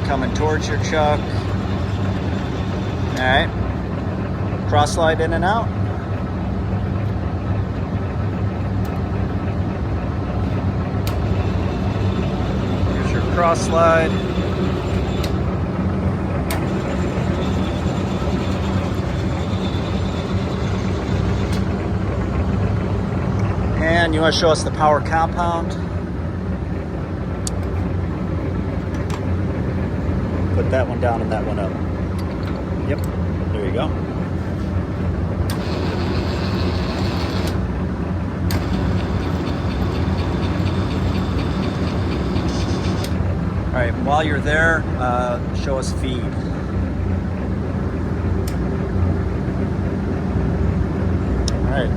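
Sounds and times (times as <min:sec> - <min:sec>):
fast regular ticking drive: 0:00.0 - 0:07.0, 0:08.2 - 0:22.0, 0:35.0 - 0:44.1
gear whine: 0:00.0 - 0:51.9
lathe mechanical hum: 0:00.0 - 0:51.9
short machine clicks: 0:38.5 - 0:43.2.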